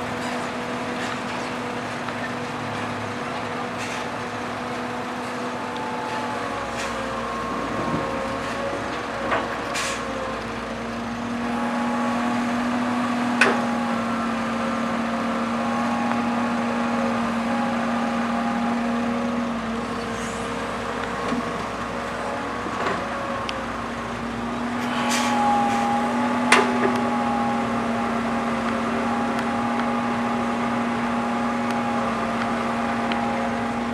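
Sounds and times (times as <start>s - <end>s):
excavator diesel engine working: 0.0s - 33.9s
brief hiss: 24.8s - 26.0s.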